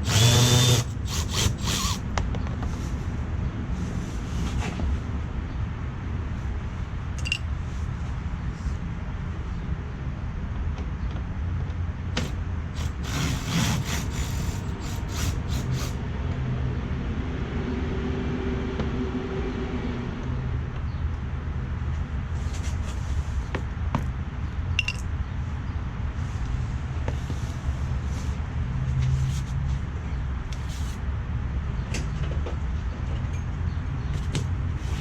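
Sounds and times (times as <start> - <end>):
tools and screws clinking: 7.2 - 7.5, 24.8 - 25.1.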